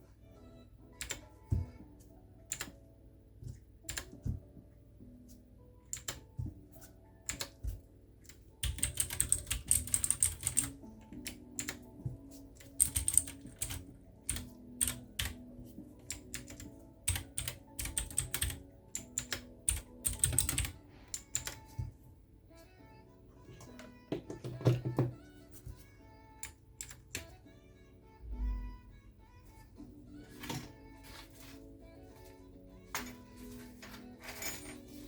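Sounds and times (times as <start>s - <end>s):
mechanical keyboard typing: 1.0s - 1.3s, 2.5s - 2.8s, 3.8s - 4.2s, 5.9s - 6.3s, 7.2s - 7.6s, 8.3s - 11.8s, 12.6s - 15.4s, 16.0s - 21.7s, 26.4s - 27.3s.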